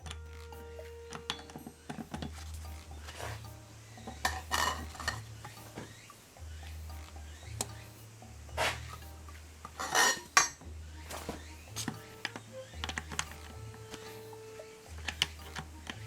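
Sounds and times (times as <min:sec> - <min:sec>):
metal tools clinking: 0:00.0 - 0:05.9, 0:09.6 - 0:16.0.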